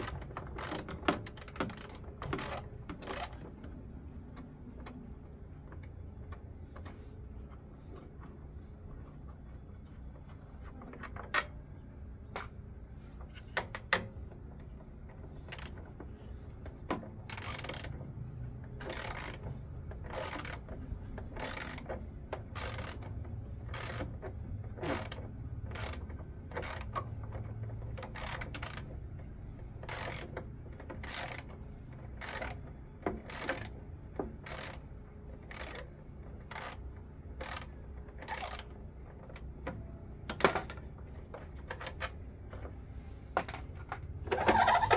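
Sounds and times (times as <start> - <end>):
ratchet clicking: 0.0 - 3.4, 15.4 - 15.8, 17.2 - 18.0, 18.8 - 19.5, 20.1 - 27.1, 27.9 - 29.0, 29.7 - 33.8, 34.4 - 39.5
low steady hum: 0.0 - 44.9.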